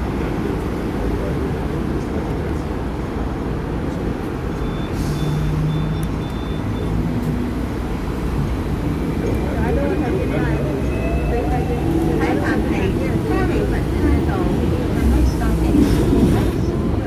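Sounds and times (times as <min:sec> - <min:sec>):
tram rumbling: 0:00.0 - 0:17.0.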